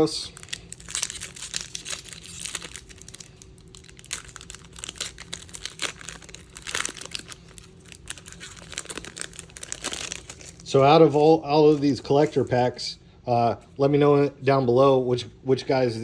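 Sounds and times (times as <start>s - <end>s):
foil wrapper crinkling and tearing: 0.0s - 12.7s
sharp crackles: 0.3s - 12.5s.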